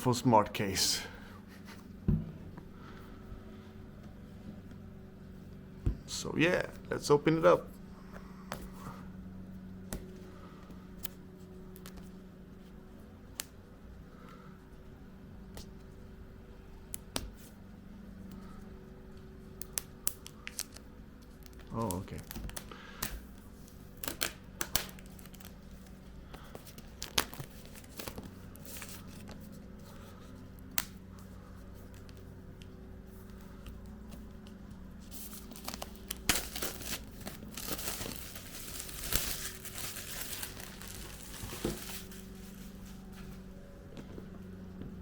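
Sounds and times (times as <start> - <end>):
packaging clicks: 23.9 - 25.6, 35.1 - 42.2
cardboard crinkling and tearing: 35.0 - 42.9.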